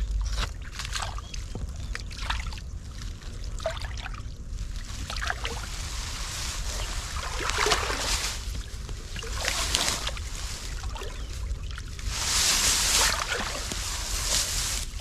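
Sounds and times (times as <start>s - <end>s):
water splashing and sloshing: 0.0s - 15.0s.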